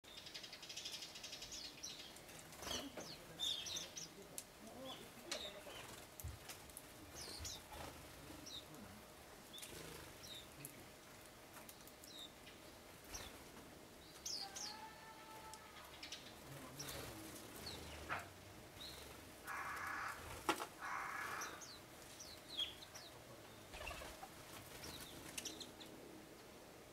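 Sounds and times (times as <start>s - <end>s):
small birds chirping: 0.0s - 26.1s
wing flutters: 5.3s - 8.5s, 9.6s - 10.4s, 18.9s - 21.6s, 23.7s - 25.6s.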